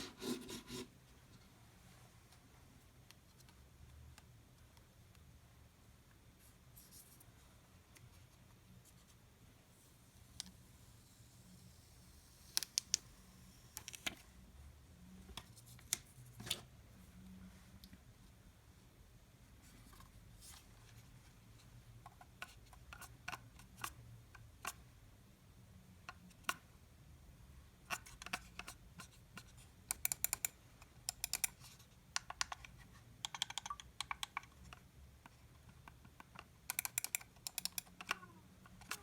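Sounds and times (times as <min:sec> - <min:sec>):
computer mouse clicking: 0:29.9 - 0:34.8, 0:35.8 - 0:38.2.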